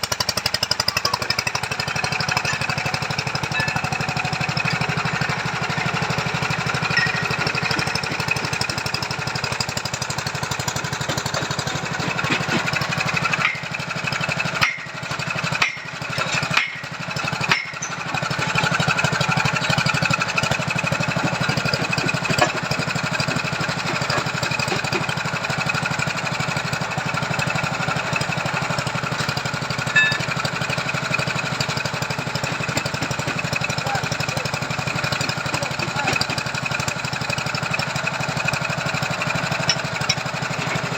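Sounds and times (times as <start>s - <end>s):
small petrol engine of soil auger: 0.0s - 40.9s.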